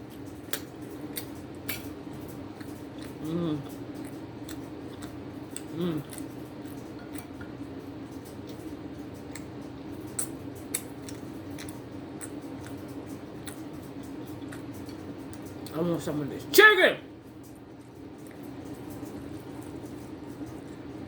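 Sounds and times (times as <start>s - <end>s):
steady low hum: 0.0s - 21.0s
person humming: 3.2s - 3.7s, 5.7s - 6.1s.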